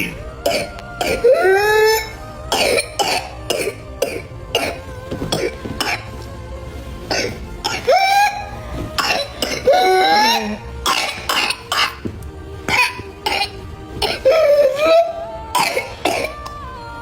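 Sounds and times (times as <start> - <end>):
short sharp coughs: 9.0 - 10.2, 10.9 - 12.0.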